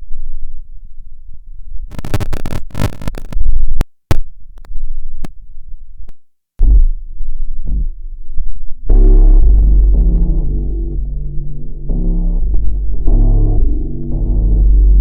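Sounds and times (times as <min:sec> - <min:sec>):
harsh crackling bursts: 0:01.9 - 0:03.8, 0:08.9 - 0:15.0
loud low boom: 0:06.6 - 0:07.1, 0:08.9 - 0:15.0
low synth rumble: 0:06.6 - 0:15.0
synth tone stepping between pitches: 0:08.9 - 0:15.0.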